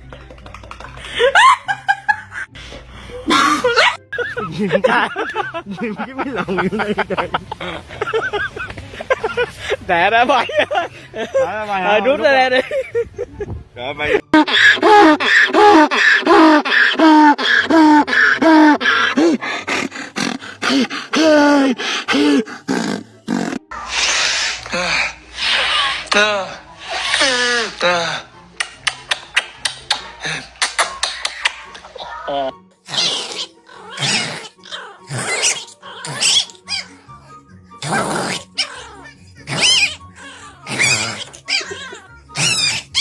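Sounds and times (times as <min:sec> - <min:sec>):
dog growling and snarling: 0:17.5 - 0:23.9, 0:32.9 - 0:37.0, 0:37.8 - 0:43.0.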